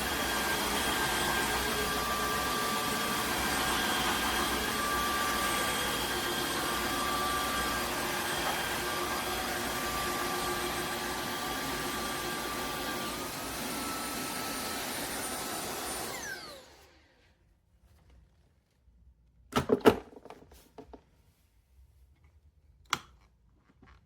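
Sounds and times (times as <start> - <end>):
vacuum cleaner motor whine: 0.0 - 17.3.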